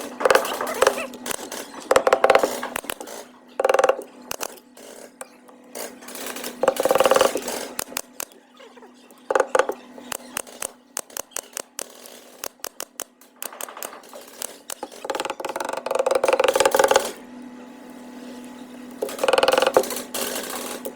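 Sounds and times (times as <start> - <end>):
small machine rattling: 0.0 - 17.3, 19.0 - 20.9
sharp clicks and taps: 6.6 - 8.4, 9.3 - 15.6.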